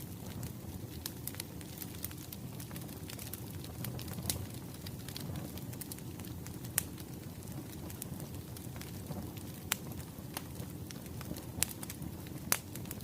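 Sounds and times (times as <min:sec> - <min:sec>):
firewood crackling and popping: 0:00.0 - 0:13.0
low fire rumble: 0:00.0 - 0:13.0.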